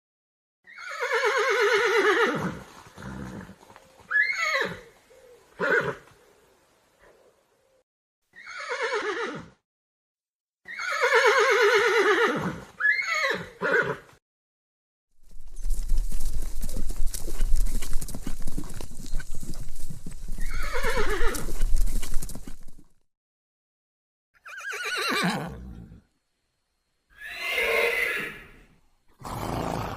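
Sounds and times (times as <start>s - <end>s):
horse whinnying: 0.6s - 4.9s, 5.6s - 6.0s, 8.4s - 9.6s, 10.7s - 14.1s, 20.3s - 22.3s, 24.4s - 26.0s, 27.1s - 29.9s
horse hooves clip-clopping: 2.5s - 5.1s, 15.2s - 23.0s.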